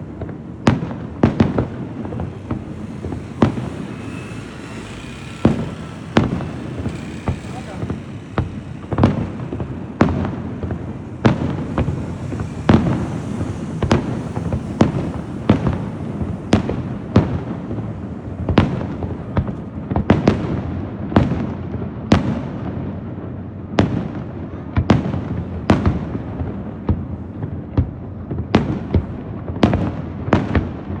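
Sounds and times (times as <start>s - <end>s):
rumble and crackle of explosions: 0.0s - 31.0s
firework shells bursting: 0.2s - 20.6s.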